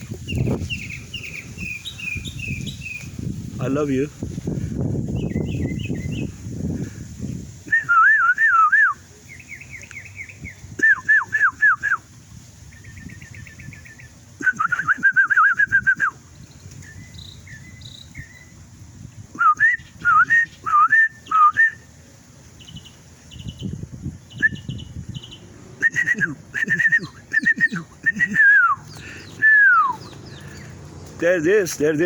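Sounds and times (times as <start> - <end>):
bird chirps and trills: 0.0 - 3.3, 5.0 - 6.5, 9.2 - 10.8, 12.6 - 14.3, 16.3 - 18.7, 22.5 - 31.6
person whistling birdsong: 0.3 - 3.0, 5.1 - 6.3, 7.6 - 12.1, 12.7 - 16.2, 19.3 - 21.8, 24.3 - 30.7.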